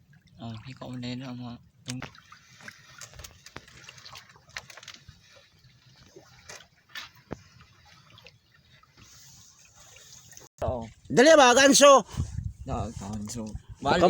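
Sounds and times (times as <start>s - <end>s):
water splashing and dripping: 0.0s - 10.5s.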